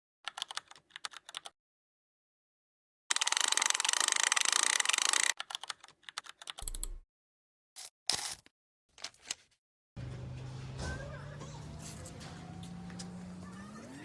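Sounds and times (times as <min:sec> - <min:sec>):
keyboard typing: 0:00.3 - 0:01.5, 0:03.1 - 0:07.0.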